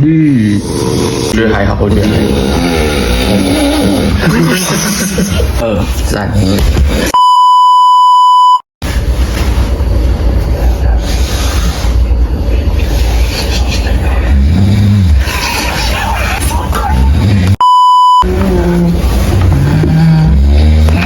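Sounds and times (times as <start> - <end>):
loud snoring: 0.5 - 4.3, 14.3 - 15.4, 18.4 - 21.0.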